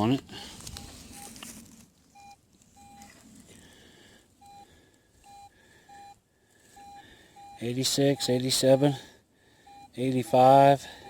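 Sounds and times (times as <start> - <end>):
metal detector beeps: 0.7 - 1.4, 2.1 - 3.2, 4.4 - 9.0, 9.6 - 11.0.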